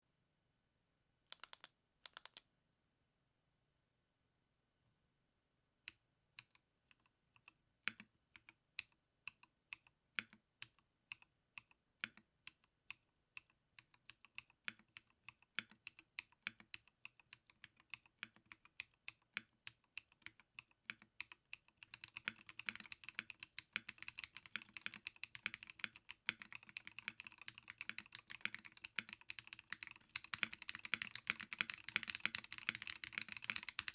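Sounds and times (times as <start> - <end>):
mechanical keyboard typing: 1.3 - 2.4, 13.8 - 33.9.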